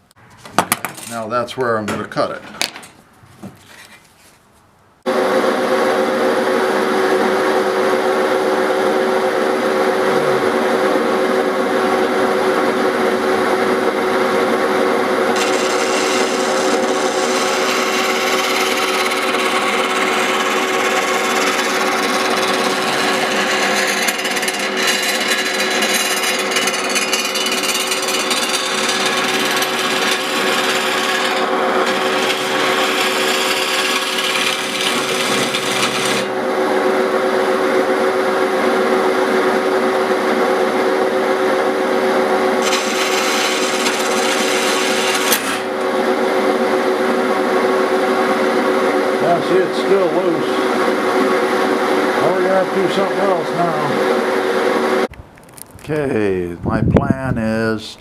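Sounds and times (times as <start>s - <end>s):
power tool cutting sheet metal: 15.2s - 36.5s, 42.6s - 45.9s.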